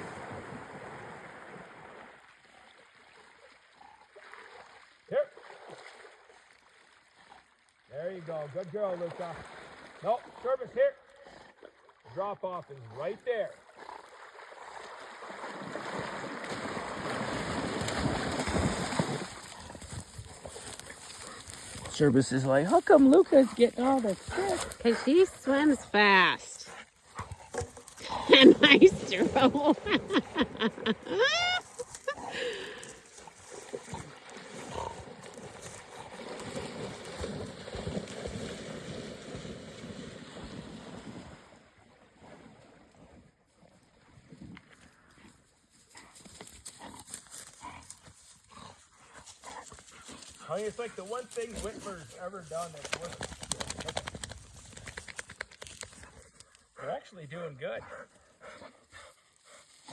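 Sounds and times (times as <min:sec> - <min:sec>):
dog splashing through water: 0:00.0 - 0:07.5, 0:08.8 - 0:10.4, 0:13.6 - 0:26.2, 0:27.0 - 0:41.6.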